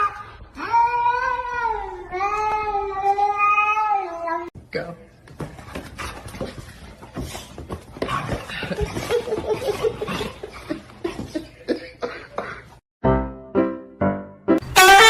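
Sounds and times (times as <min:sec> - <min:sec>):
people laughing: 0:08.5 - 0:12.8.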